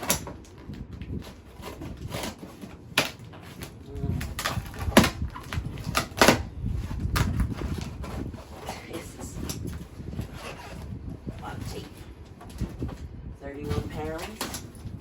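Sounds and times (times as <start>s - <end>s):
blade slitting packing tape: 0.0s - 8.6s
cardboard box rasps and knocks: 0.0s - 13.0s.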